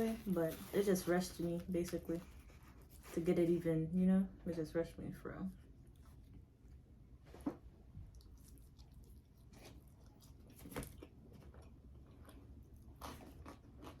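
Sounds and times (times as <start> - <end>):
person chewing food: 7.8 - 14.0.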